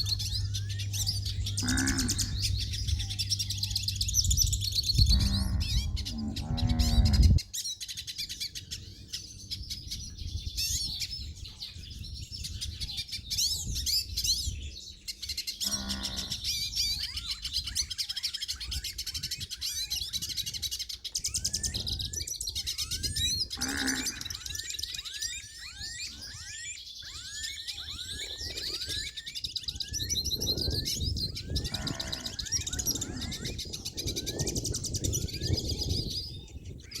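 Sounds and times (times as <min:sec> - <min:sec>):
low animal call: 0:00.0 - 0:03.8, 0:05.0 - 0:07.4, 0:15.6 - 0:16.6, 0:22.8 - 0:25.0, 0:31.3 - 0:34.4
low rumble: 0:00.0 - 0:07.4
birds chirping and singing: 0:00.0 - 0:37.0.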